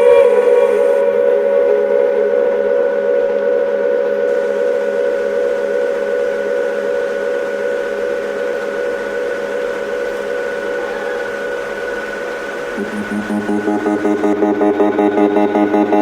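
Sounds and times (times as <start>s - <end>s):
held drone chord: 0.0s - 16.0s
hiss: 4.3s - 13.9s.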